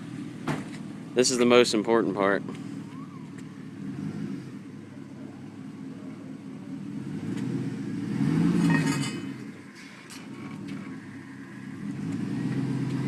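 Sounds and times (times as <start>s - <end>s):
truck engine revving: 0.0s - 13.0s.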